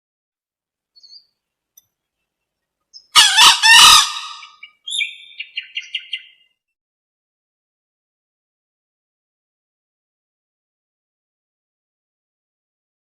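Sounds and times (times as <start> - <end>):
junglefowl hen calling: 3.0 - 6.4.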